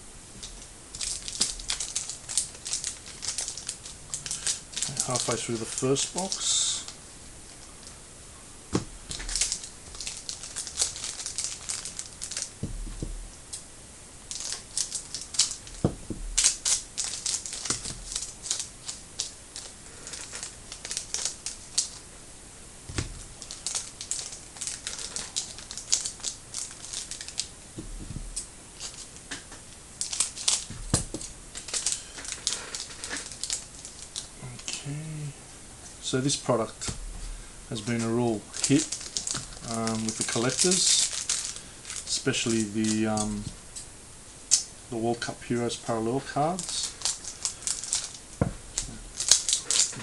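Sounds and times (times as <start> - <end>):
foil wrappers crinkling and tearing: 0.4 - 7.9, 9.1 - 12.7, 14.3 - 22.0, 22.9 - 27.5, 28.2 - 29.3, 30.0 - 34.7, 37.7 - 43.5, 45.6 - 50.0.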